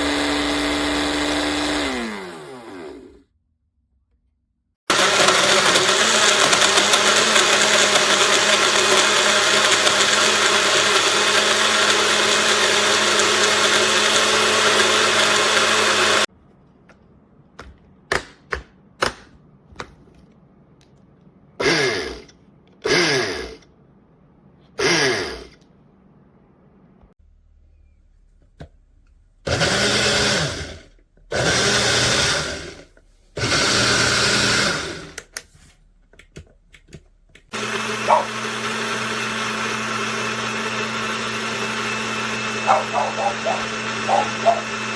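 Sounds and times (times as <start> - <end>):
blender motor running: 0.0 - 3.2, 4.9 - 16.3, 21.6 - 23.6, 24.8 - 25.5, 29.5 - 35.2, 37.5 - 44.9.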